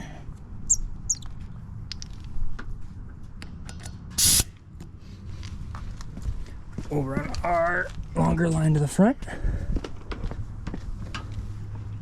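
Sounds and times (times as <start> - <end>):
compressed air hissing: 4.2 - 4.5.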